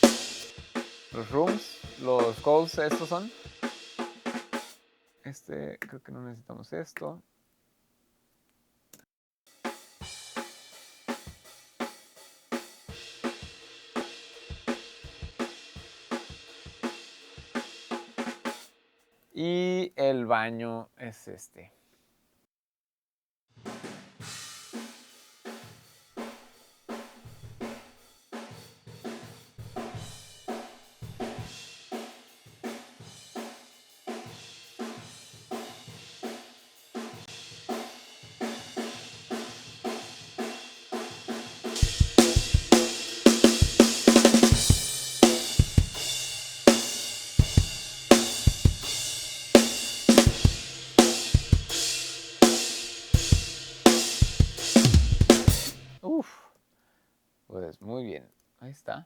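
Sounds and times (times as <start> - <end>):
drum kit beat: 0.0 - 4.8, 9.5 - 18.7, 23.7 - 56.0
heavy cymbals: 0.0 - 4.8, 9.5 - 18.6, 23.7 - 56.0.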